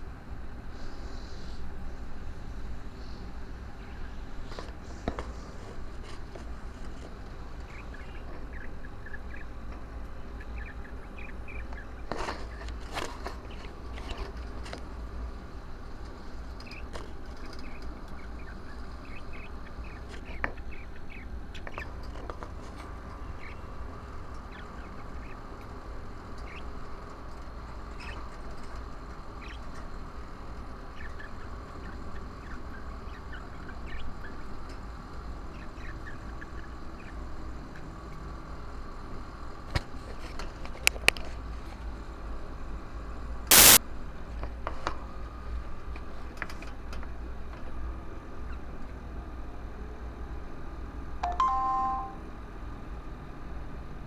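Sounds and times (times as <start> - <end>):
clicks: 43.5 - 43.8
loud burst: 43.5 - 43.8.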